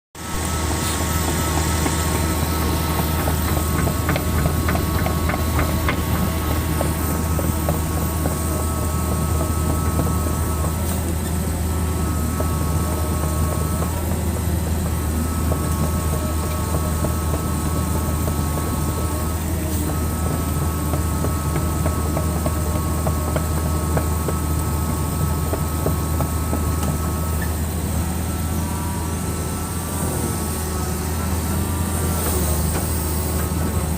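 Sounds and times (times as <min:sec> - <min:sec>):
diesel engine running: 0:00.2 - 0:33.9
high whine: 0:24.4 - 0:33.9.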